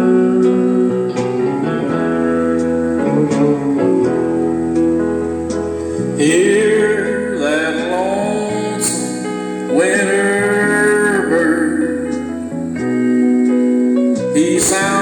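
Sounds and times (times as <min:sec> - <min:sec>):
guitar accompaniment: 0:00.0 - 0:15.0
man singing country ballad: 0:06.2 - 0:12.6, 0:14.3 - 0:15.0.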